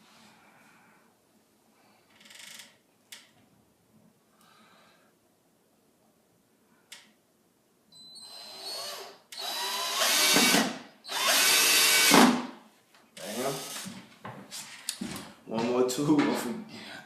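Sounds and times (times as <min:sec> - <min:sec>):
cordless power drill running: 0:08.4 - 0:12.3, 0:13.2 - 0:13.9.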